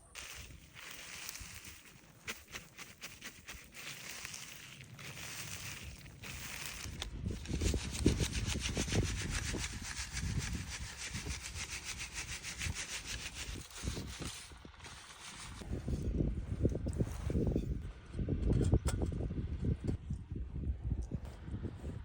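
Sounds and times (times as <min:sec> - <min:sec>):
rapid scraping strokes: 0:00.0 - 0:15.7.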